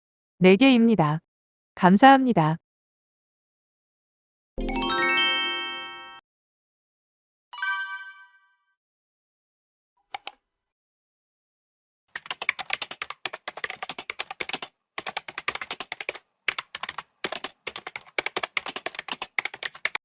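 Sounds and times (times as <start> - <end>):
mouse button clicks: 10.1 - 10.4
typing on computer keyboard: 12.1 - 20.0.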